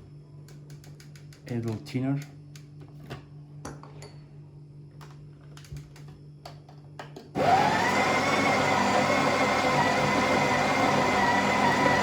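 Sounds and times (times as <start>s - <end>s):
coffee grinder motor grinding beans: 7.4s - 12.0s.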